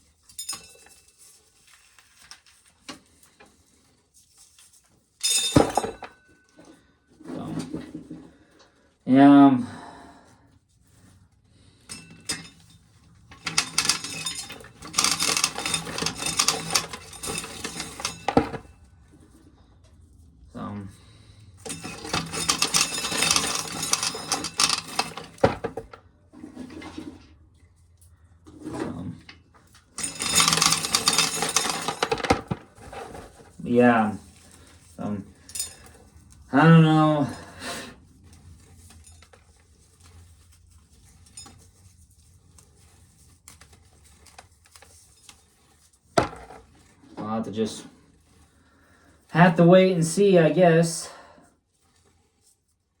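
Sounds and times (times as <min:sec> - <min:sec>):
corn kernels rattling: 0:13.4 - 0:18.5, 0:30.0 - 0:32.5.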